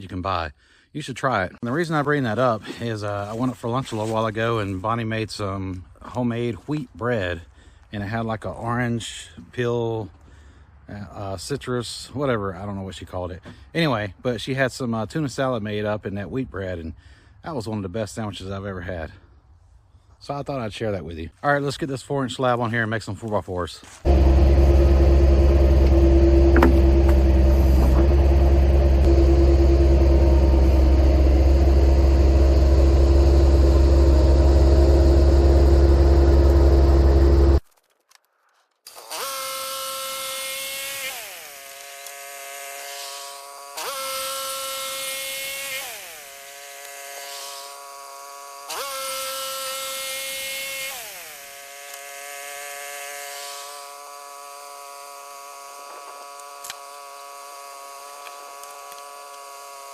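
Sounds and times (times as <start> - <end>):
bandsaw sawmill cutting: 24.0 - 37.6, 38.9 - 59.9
machine whine rising and falling: 24.1 - 37.6.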